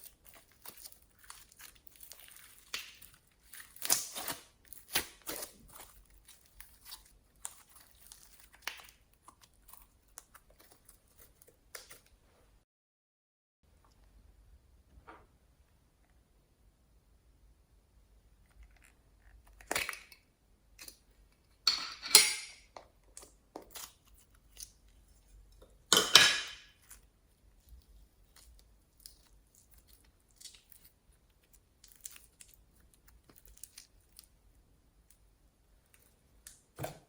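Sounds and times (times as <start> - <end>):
slime squishing: 0.0 - 12.2, 22.9 - 25.9, 26.7 - 34.4.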